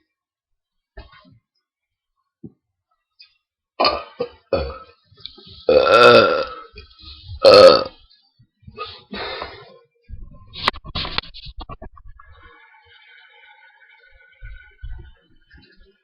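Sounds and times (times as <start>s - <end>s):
person burping: 3.8s - 5.0s, 5.6s - 6.8s, 7.4s - 8.0s.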